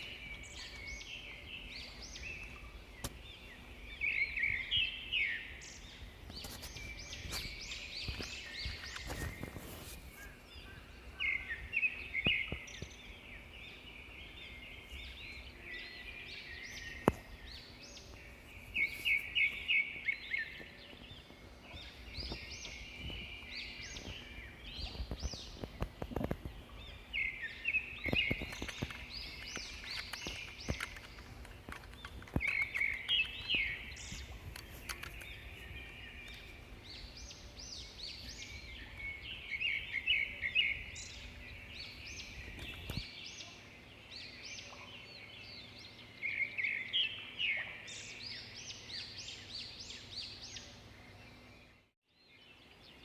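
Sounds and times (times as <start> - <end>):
small birds chirping: 0.0 - 53.0
faint clicks: 28.0 - 36.5.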